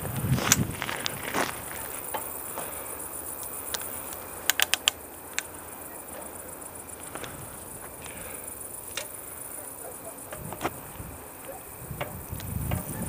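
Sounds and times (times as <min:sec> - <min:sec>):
crickets chirping: 0:00.0 - 0:13.0
faint ticks: 0:00.1 - 0:06.3, 0:06.9 - 0:13.0
sharp clicks: 0:03.4 - 0:05.6.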